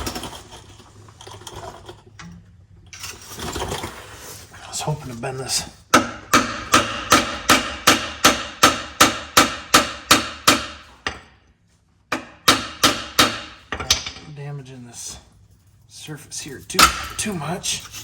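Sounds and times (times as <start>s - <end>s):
hammer striking metal pipe: 6.0s - 11.3s, 12.1s - 13.6s.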